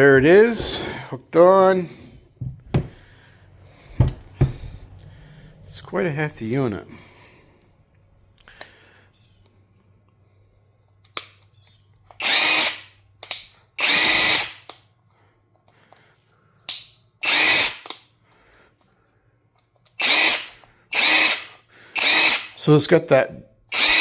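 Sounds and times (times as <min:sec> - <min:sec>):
impact wrench whine: 0:12.2 - 0:13.0, 0:13.8 - 0:14.7, 0:17.2 - 0:18.0, 0:20.0 - 0:22.6, 0:23.7 - 0:24.0.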